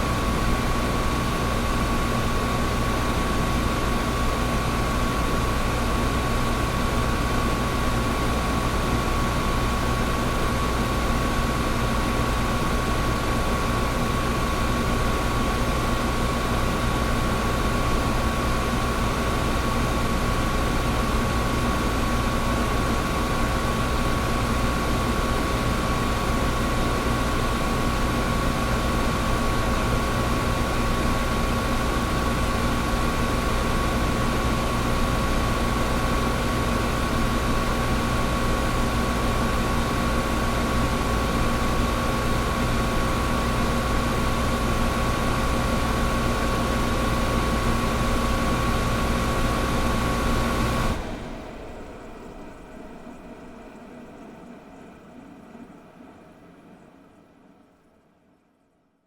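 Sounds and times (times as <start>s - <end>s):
air conditioner running: 0.0s - 57.5s.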